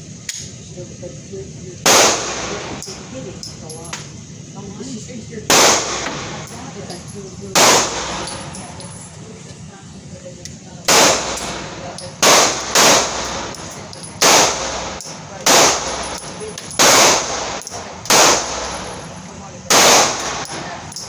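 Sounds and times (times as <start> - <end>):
pistol shots with echo: 1.8 - 3.8, 5.5 - 9.0, 10.9 - 21.0.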